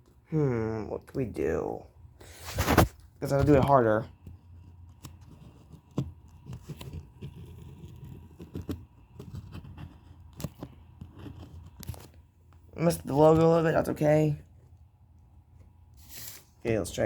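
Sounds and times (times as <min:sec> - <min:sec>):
pen scratching on paper: 0:04.2 - 0:12.0.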